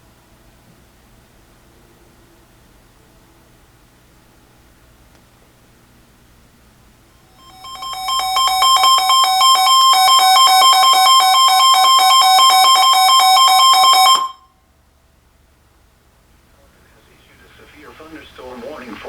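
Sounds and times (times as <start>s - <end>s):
electronic alarm tone pulsing: 7.4s - 14.5s.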